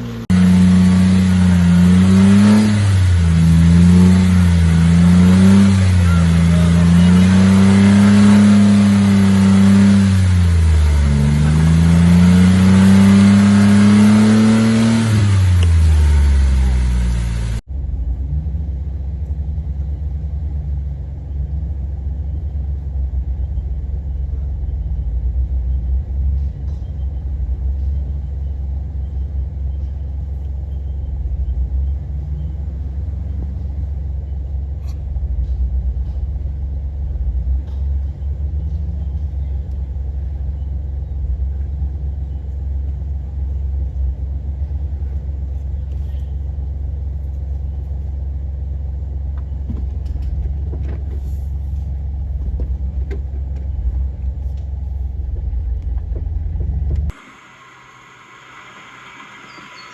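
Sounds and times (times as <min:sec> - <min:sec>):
vehicle engine low rumble: 0:00.0 - 0:59.9.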